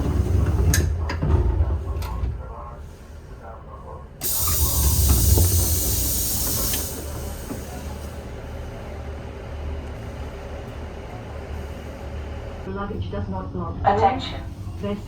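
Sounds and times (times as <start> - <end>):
train low rumble: 0.0 - 15.0
loud hiss: 4.2 - 7.8.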